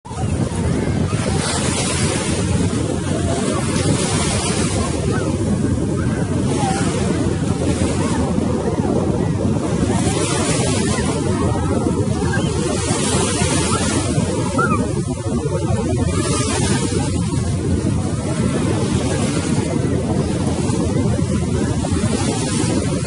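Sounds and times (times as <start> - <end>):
wind buffeting microphone: 0.0 - 23.0
sea waves washing in: 0.1 - 23.0.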